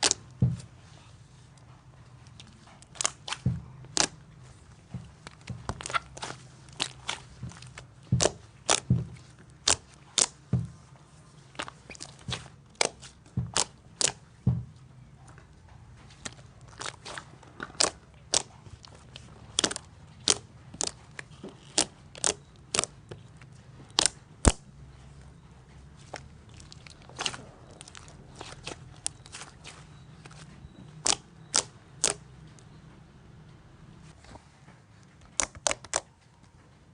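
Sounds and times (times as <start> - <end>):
slime popping and clicking: 2.4 - 4.2, 5.2 - 9.0, 9.6 - 10.4, 11.6 - 14.2, 16.2 - 23.3, 23.9 - 24.6, 31.0 - 32.2, 35.3 - 36.1.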